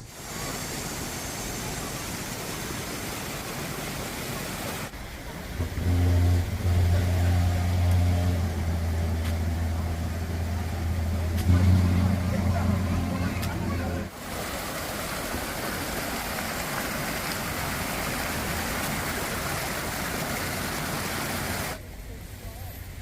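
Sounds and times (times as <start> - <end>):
rush of traffic: 0.0 - 23.0
low engine hum: 4.9 - 16.6.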